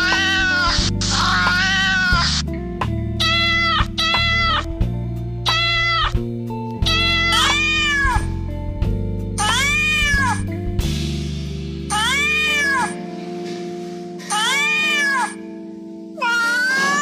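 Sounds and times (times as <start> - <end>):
cat meowing: 0.0 - 2.4, 3.2 - 4.7, 5.5 - 6.2, 6.8 - 8.3, 9.4 - 10.5, 11.9 - 13.0, 14.3 - 15.4, 16.2 - 17.0
background music: 0.0 - 17.0.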